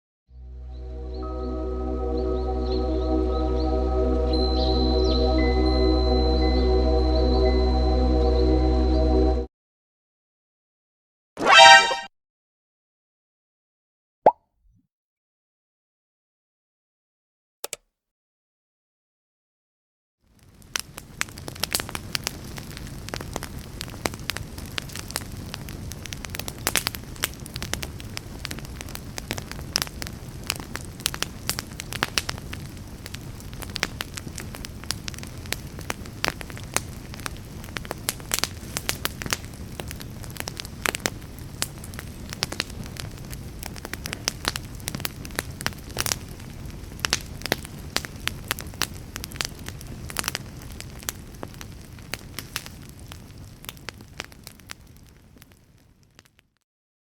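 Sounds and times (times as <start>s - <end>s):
fire crackling: 20.4s - 56.4s.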